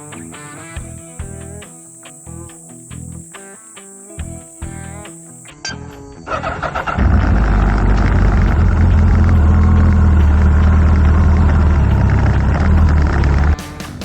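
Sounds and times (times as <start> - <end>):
motorcycle engine running: 6.3 - 14.0.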